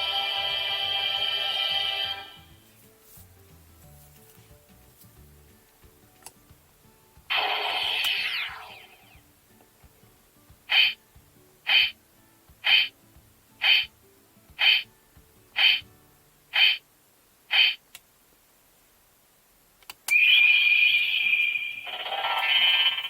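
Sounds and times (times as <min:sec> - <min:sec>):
toy belt electronic tones: 0:20.1 - 0:23.0.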